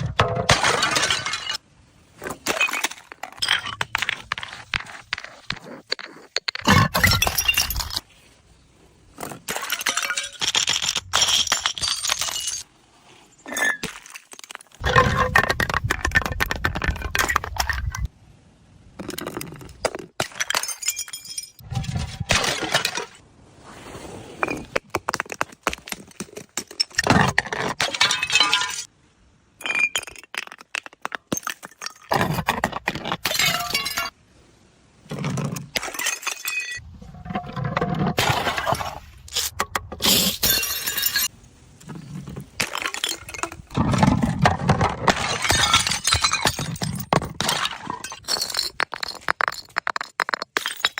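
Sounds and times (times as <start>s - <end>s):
glass bottles smashing: 0.2s - 1.6s, 6.7s - 8.0s, 9.5s - 12.6s, 20.2s - 21.6s, 27.8s - 28.9s, 33.2s - 34.1s, 35.8s - 36.8s, 40.0s - 41.3s, 42.6s - 50.9s.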